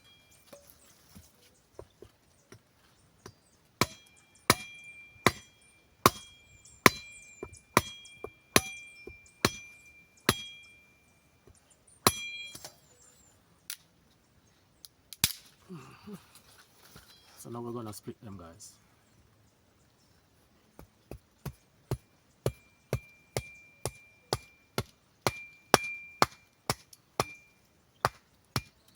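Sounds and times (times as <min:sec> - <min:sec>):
metal blade chopping wood: 0:03.8 - 0:07.1, 0:07.8 - 0:09.7, 0:10.3 - 0:10.6, 0:12.1 - 0:12.8, 0:21.4 - 0:28.9
metallic ring of blade: 0:03.8 - 0:10.9, 0:12.1 - 0:12.9.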